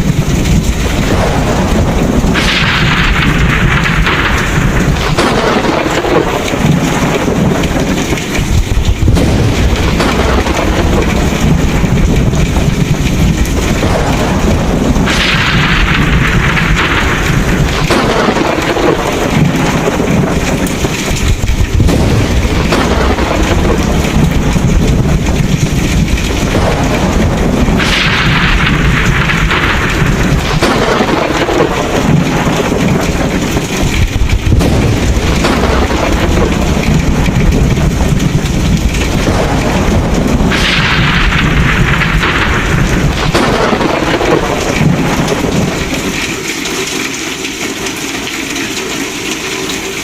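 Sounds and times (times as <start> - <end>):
heavy rain: 0.0 - 50.0
low rumble of thunder: 0.0 - 50.0
thunderclaps: 0.0 - 50.0.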